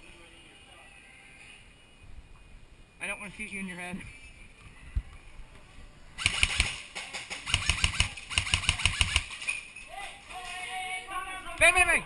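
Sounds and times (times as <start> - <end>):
airsoft gun automatic bursts: 6.2 - 9.5.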